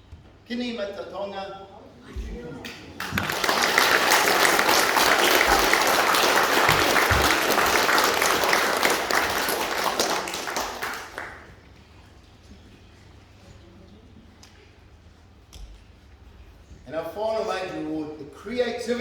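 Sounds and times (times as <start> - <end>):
audience applauding: 2.6 - 11.6.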